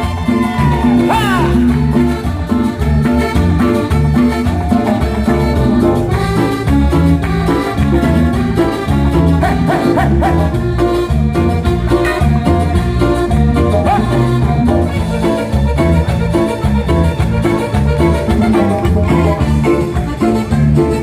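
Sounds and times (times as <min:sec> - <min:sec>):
live cumbia band over loudspeakers: 0:00.0 - 0:21.0.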